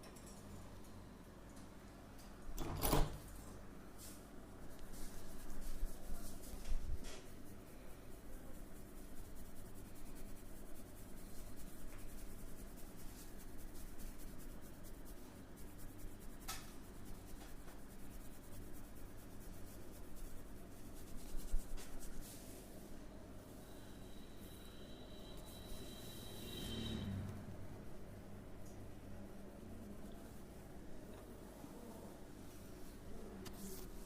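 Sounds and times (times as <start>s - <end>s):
hands scratching hair and skin: 4.0s - 22.6s, 33.4s - 34.0s.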